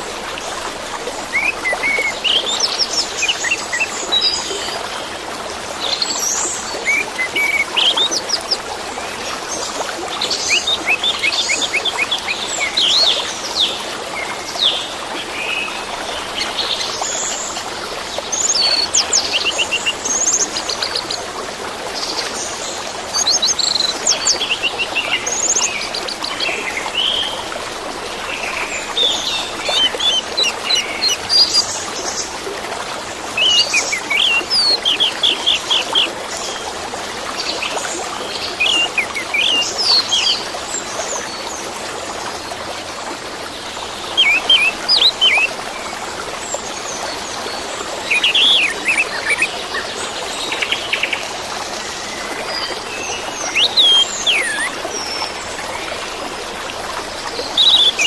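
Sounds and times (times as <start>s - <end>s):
running water: 0.0s - 58.0s
thrush singing trills: 33.3s - 36.2s, 38.3s - 40.4s, 48.0s - 49.6s, 53.0s - 54.9s.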